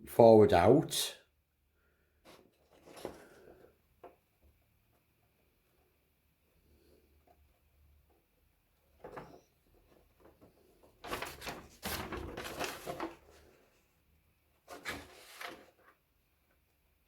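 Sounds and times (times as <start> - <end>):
plastic parts rustling and clattering: 2.2 - 4.6, 8.9 - 13.8.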